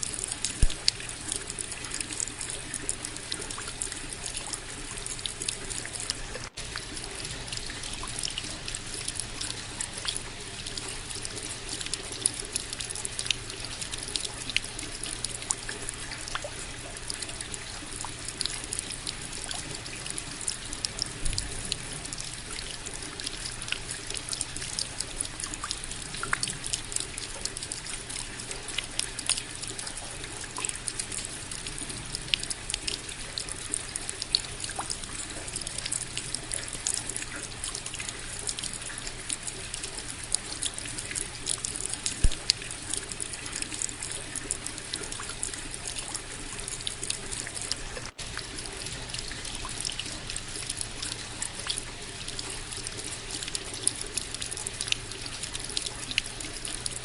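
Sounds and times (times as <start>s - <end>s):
steady rain with ticking drops: 0.0s - 57.0s.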